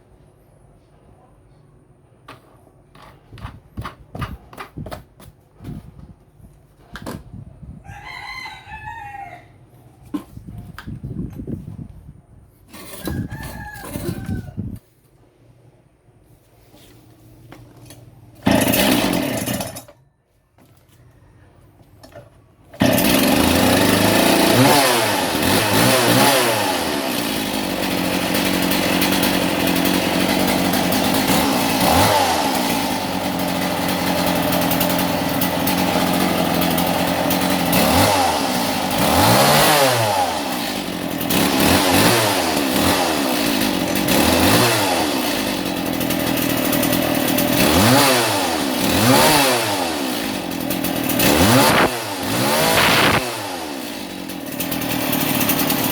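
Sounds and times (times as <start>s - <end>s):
cut-off saw engine revving: 18.4s - 19.8s, 22.8s - 55.9s.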